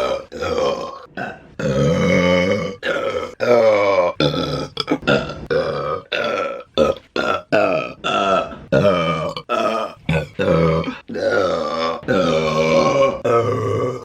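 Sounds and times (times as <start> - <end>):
woman burping: 0.0 - 14.0.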